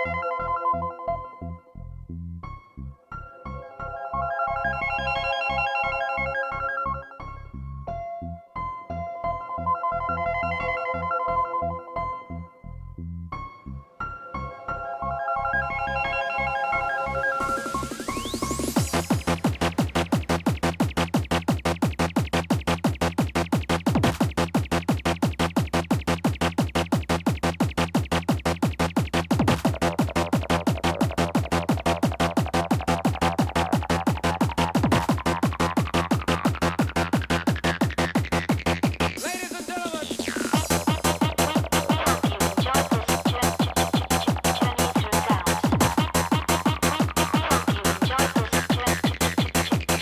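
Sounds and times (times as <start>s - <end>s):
fast electronic rave music: 15.8s - 50.0s
pounding kick drum: 18.8s - 39.2s, 40.6s - 50.0s.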